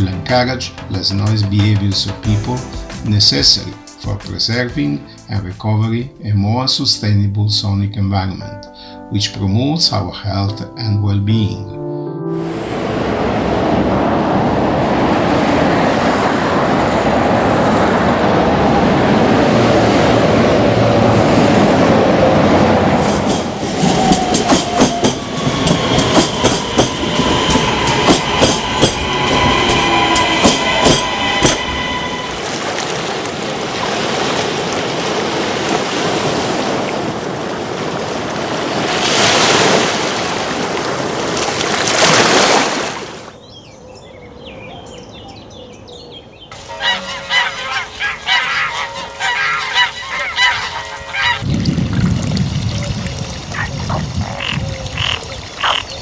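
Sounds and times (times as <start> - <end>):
train rumbling on rails: 12.4 - 39.0, 46.5 - 52.9
wheels clacking over rail joints: 21.0 - 32.0
wheels squealing: 21.9 - 33.6, 46.6 - 51.4.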